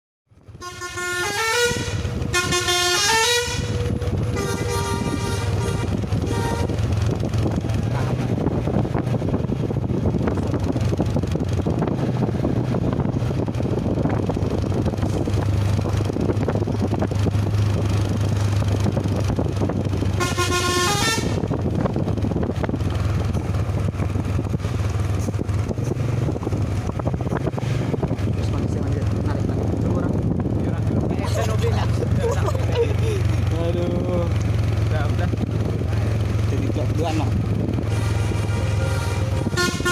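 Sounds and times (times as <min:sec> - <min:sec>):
road and engine rumble: 0:00.3 - 0:39.9
bus musical multi-tone horn: 0:00.5 - 0:07.3, 0:20.1 - 0:21.7, 0:37.8 - 0:39.9.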